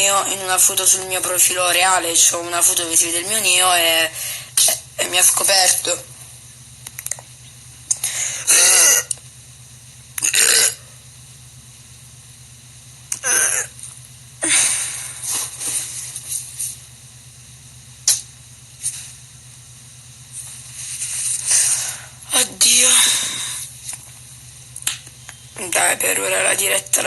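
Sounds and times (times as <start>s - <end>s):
woman burping: 8.4s - 9.2s, 10.2s - 10.9s, 13.1s - 13.8s
sharp clicks: 18.0s - 18.3s.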